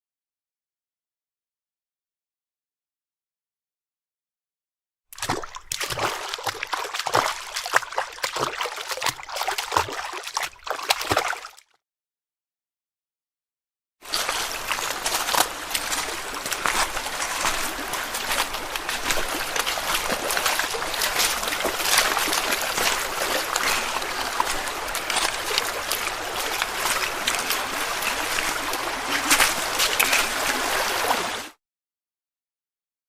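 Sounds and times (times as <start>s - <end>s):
footsteps wading through water: 5.1s - 11.7s, 14.0s - 31.6s
watery rush: 5.2s - 11.6s, 14.0s - 31.6s.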